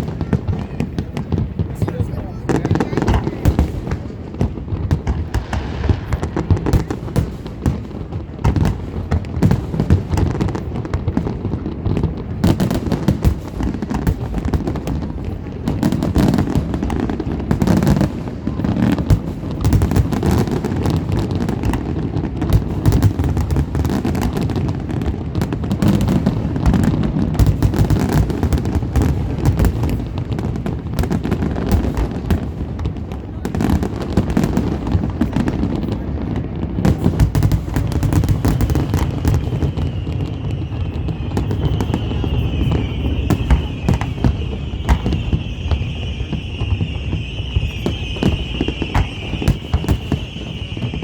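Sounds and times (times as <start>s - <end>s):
sharp firework cracks: 0.0s - 11.4s, 36.9s - 51.0s
firework shell bursts and booms: 41.4s - 51.0s.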